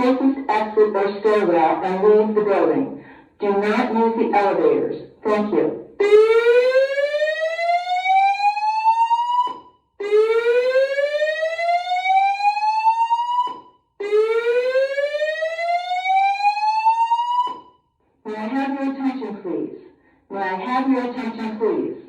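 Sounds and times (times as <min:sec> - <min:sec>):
fire alarm whoop tone: 0:06.0 - 0:17.8.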